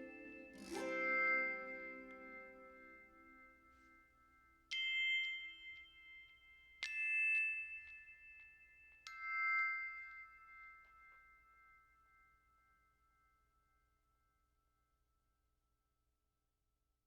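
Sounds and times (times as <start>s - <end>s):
background music: 0.0s - 3.7s
glockenspiel-like chime notes: 0.0s - 13.8s.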